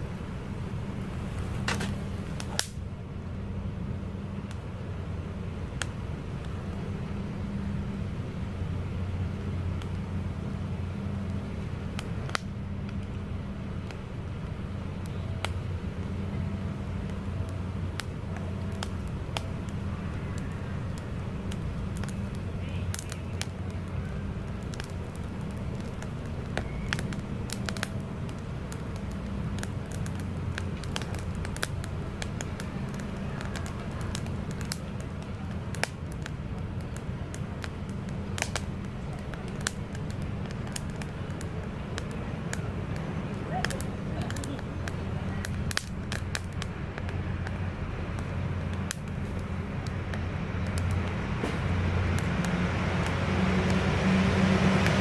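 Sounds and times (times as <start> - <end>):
wood fire crackling and popping: 0.0 - 3.4, 4.0 - 55.0
low hum: 0.0 - 35.8.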